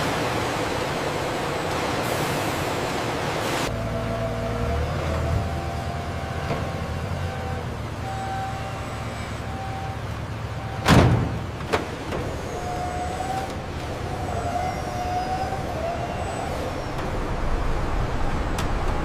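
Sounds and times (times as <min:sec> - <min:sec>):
factory machinery running: 0:06.2 - 0:19.0.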